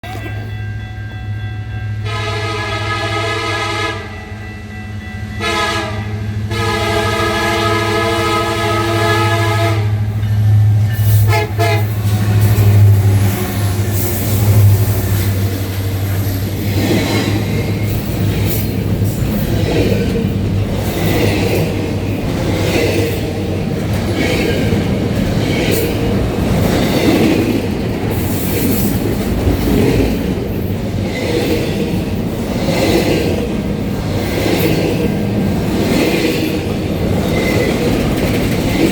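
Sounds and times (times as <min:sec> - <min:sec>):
train rumbling past: 0:00.0 - 0:38.9
locomotive air horn blasts: 0:02.0 - 0:04.2, 0:05.4 - 0:10.1, 0:11.2 - 0:15.0
wheels clacking over rail joints: 0:10.2 - 0:38.9.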